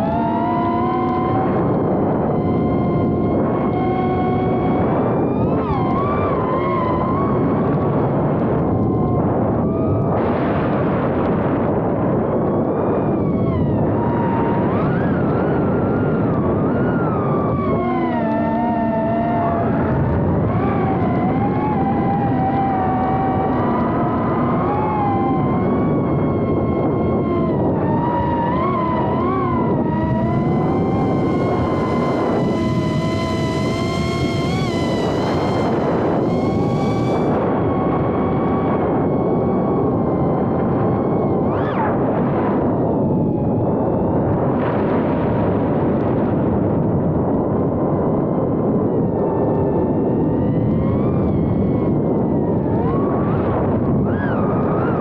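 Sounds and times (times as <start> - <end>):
quadcopter motors whining: 28.8 - 37.4
dense rushing noise: 29.4 - 37.5.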